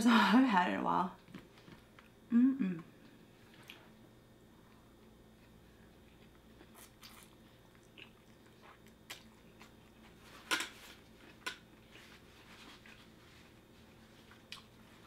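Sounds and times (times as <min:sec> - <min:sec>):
person chewing food: 0:03.4 - 0:04.0, 0:04.6 - 0:10.2, 0:11.0 - 0:15.0.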